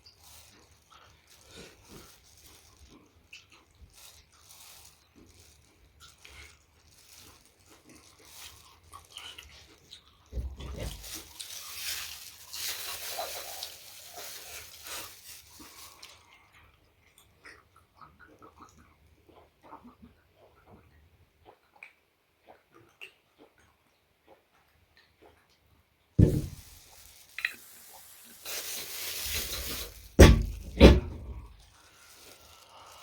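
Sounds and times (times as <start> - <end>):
chewing and biting food: 0.0 - 25.7
low thump: 26.2 - 26.6.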